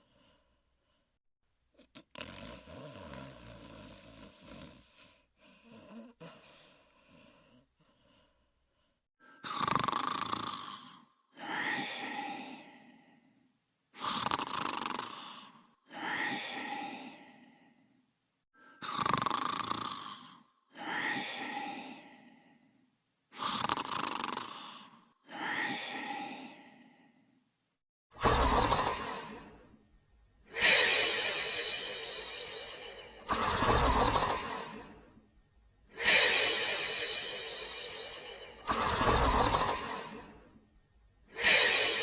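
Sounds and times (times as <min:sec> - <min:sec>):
cartoon snoring: 0:01.8 - 0:08.4, 0:09.4 - 0:12.8, 0:14.0 - 0:17.4, 0:18.6 - 0:22.2, 0:23.3 - 0:26.8, 0:28.2 - 0:29.7, 0:30.5 - 0:35.1, 0:35.9 - 0:40.5, 0:41.3 - 0:42.0
loud different sound: 0:30.6 - 0:34.4, 0:36.0 - 0:39.9.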